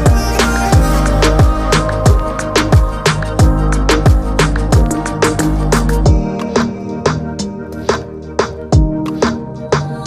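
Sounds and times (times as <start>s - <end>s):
electronic music: 0.0s - 10.0s
deep kick drums: 0.1s - 5.0s.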